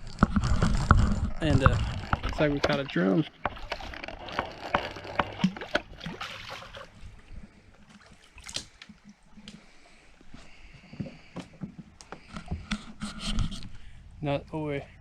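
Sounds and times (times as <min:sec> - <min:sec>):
sharp clicks and knocks: 0:00.0 - 0:06.2
water splashing at a boat: 0:00.0 - 0:14.0.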